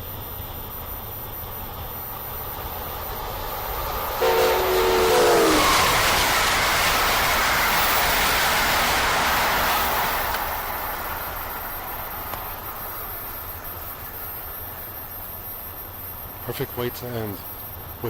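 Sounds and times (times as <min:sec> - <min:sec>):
train rushing past: 0:01.7 - 0:18.0
train horn chord: 0:04.2 - 0:06.5.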